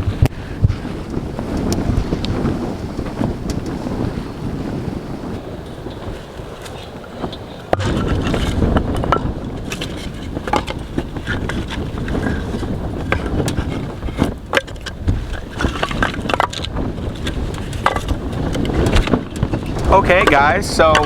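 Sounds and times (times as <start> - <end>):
wind buffeting microphone: 0.0 - 21.0
crunching and knocking: 7.3 - 21.0.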